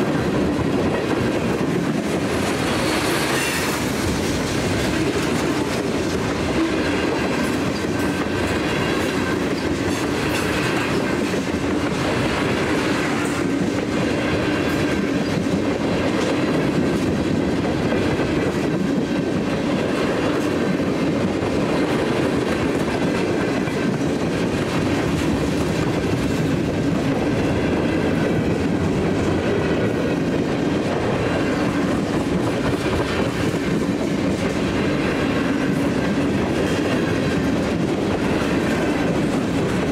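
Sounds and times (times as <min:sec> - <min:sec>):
freight train wheels clicking on rails: 0:00.0 - 0:39.9.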